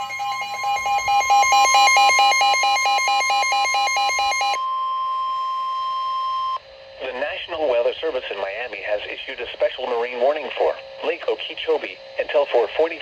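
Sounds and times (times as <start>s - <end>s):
warbling two-pitch alarm: 0.0s - 6.6s
steady piercing warning tone: 0.0s - 13.0s.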